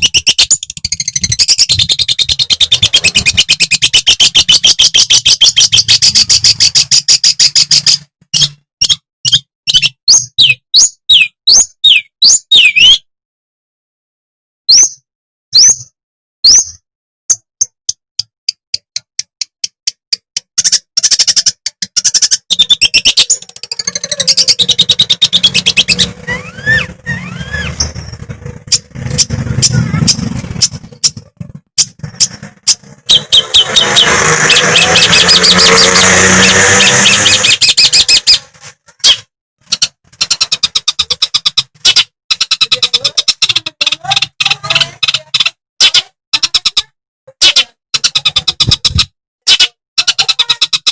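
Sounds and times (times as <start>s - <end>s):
shrike singing: 22.3s - 38.4s.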